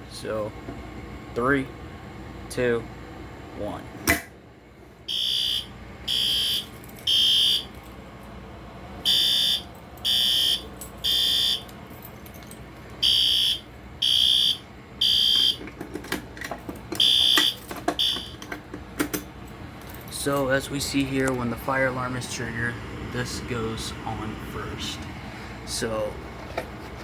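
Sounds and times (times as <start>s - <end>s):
fire alarm high-pitched beeps: 5.1s - 7.7s, 9.0s - 11.7s, 13.0s - 15.6s, 17.0s - 18.4s.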